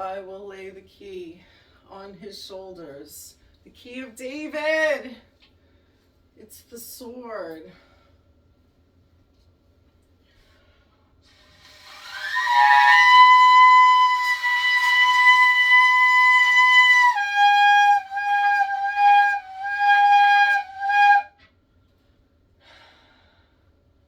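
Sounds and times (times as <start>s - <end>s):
shofar blasts: 11.9s - 21.4s.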